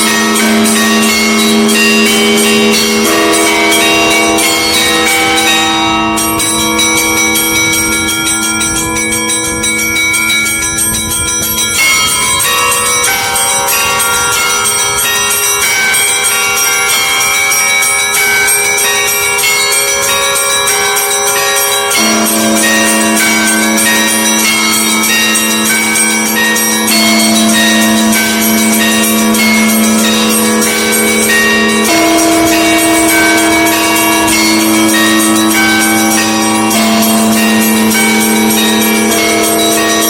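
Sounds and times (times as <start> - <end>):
heavy bell strike: 0.0 - 40.0
large bell humming: 0.0 - 40.0
small church bells pealing: 0.0 - 40.0.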